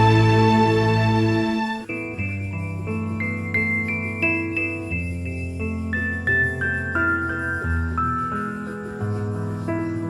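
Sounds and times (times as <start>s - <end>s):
sustained bass: 0.0s - 1.8s.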